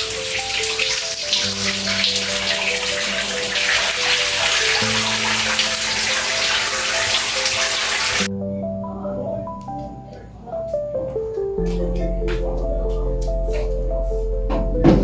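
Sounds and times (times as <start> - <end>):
water running from tap into bath: 0.0 - 8.3
soft background music: 0.0 - 15.0.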